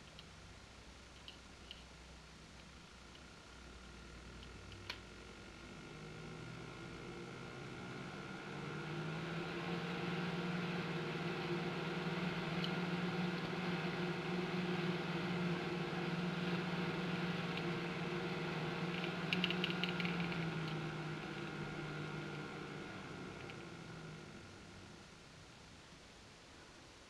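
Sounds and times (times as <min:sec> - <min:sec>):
faint clicks: 0:00.0 - 0:00.3, 0:01.1 - 0:01.9, 0:04.4 - 0:05.1, 0:18.9 - 0:21.4
computer fan humming: 0:00.0 - 0:27.0.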